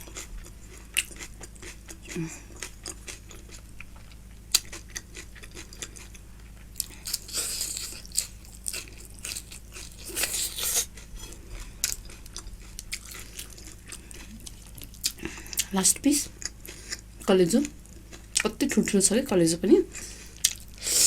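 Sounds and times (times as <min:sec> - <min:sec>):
wet chewing with mouth smacks: 0:00.1 - 0:15.7.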